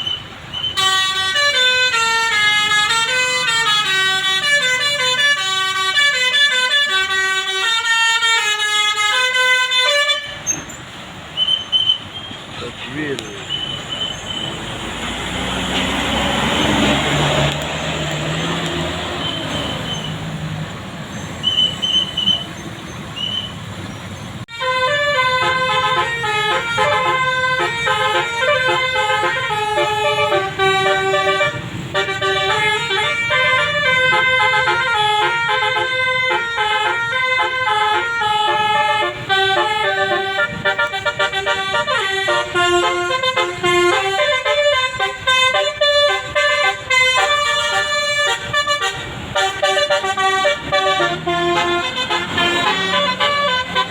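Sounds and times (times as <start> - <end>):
bus engine passing: 0.0 - 53.9
road noise: 0.0 - 53.9
melodic bus air horn: 0.7 - 10.8, 24.5 - 53.9.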